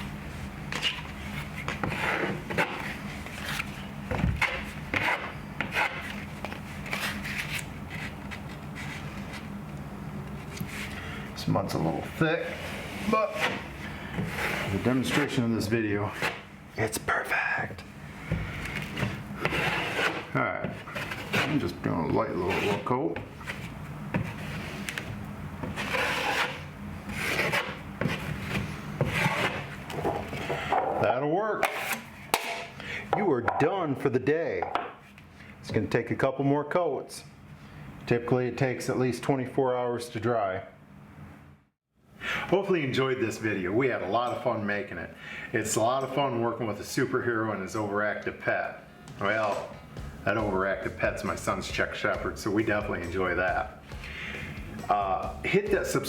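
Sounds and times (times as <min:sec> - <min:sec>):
drywall knife scraping: 0:00.7 - 0:03.8, 0:04.4 - 0:09.1, 0:12.4 - 0:16.5, 0:18.4 - 0:30.8, 0:31.6 - 0:32.5.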